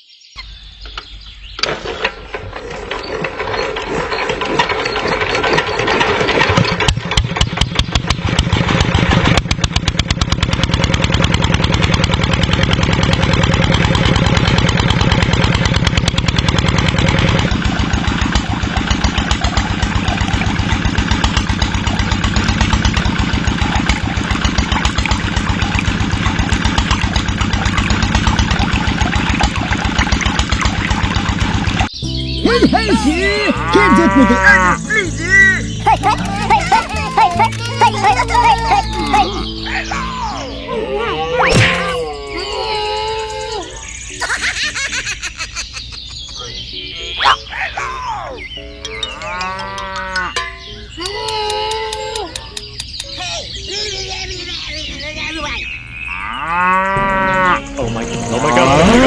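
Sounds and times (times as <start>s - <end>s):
small engine running: 1.6s - 46.0s, 57.0s - 59.0s.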